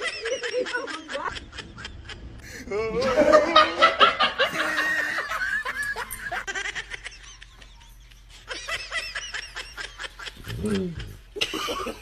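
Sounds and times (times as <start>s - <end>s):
person snickering: 9.8s - 12.0s.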